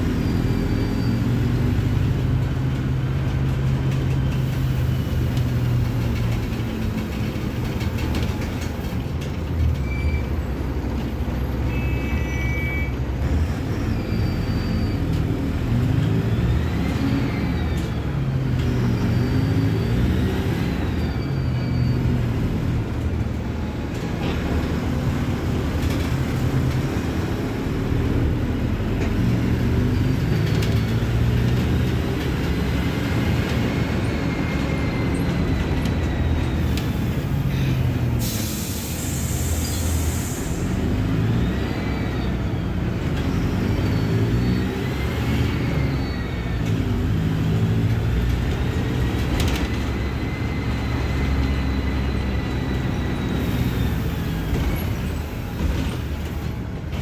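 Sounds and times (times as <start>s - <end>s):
bus diesel engine accelerating: 0.0s - 57.0s
air brakes hissing: 36.6s - 42.3s, 48.9s - 56.5s.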